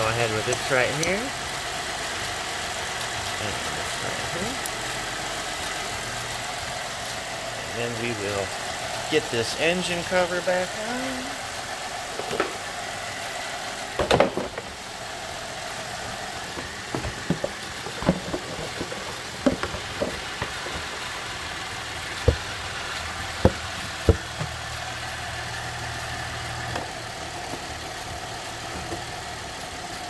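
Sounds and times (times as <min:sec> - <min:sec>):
car engine idling: 0:00.0 - 0:30.0
plastic cover knocks and clicks: 0:16.6 - 0:21.0, 0:23.4 - 0:24.6.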